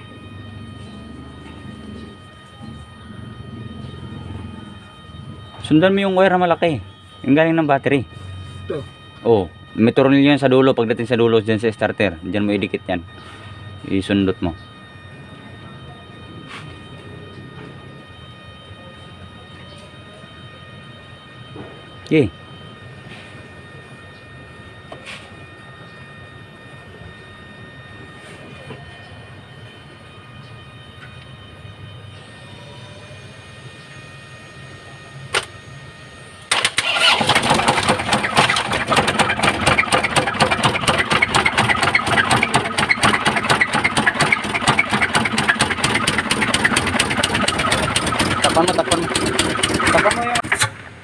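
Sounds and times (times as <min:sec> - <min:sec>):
diesel engine running with knock: 0:00.2 - 0:02.3, 0:36.5 - 0:51.0.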